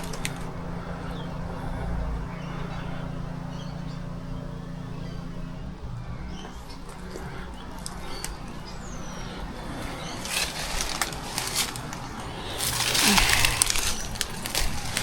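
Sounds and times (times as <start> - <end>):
faint bird chirp: 0.0 - 15.0
footsteps crunching dry leaves: 7.8 - 15.0.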